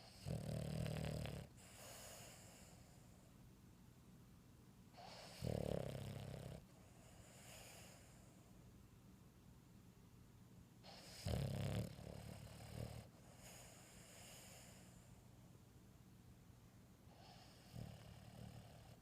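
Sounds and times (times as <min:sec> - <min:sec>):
dog snoring: 0:00.0 - 0:03.2, 0:05.0 - 0:08.4, 0:10.8 - 0:15.1, 0:17.1 - 0:19.0.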